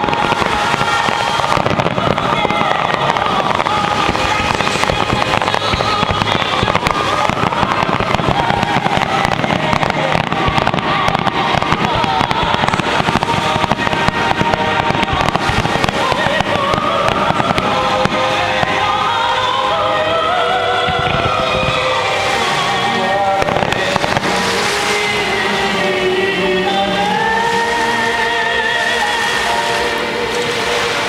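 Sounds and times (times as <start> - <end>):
fireworks crackling and popping: 0.0 - 31.0
music playing: 0.0 - 31.0.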